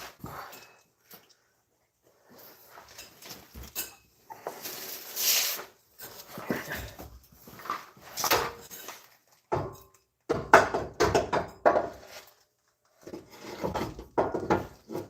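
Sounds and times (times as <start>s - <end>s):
metal clunks and scraping: 13.0s - 15.0s.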